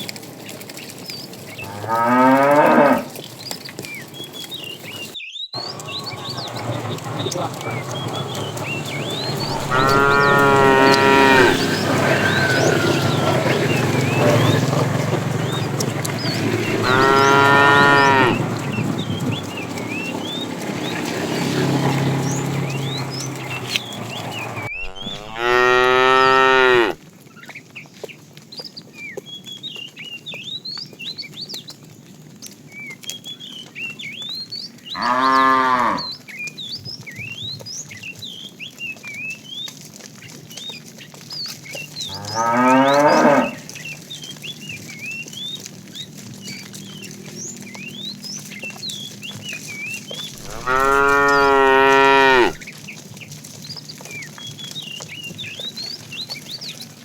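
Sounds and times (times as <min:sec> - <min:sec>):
cows mooing: 0:01.6 - 0:03.2, 0:05.6 - 0:27.0, 0:35.0 - 0:36.2, 0:42.1 - 0:44.0, 0:50.3 - 0:52.6.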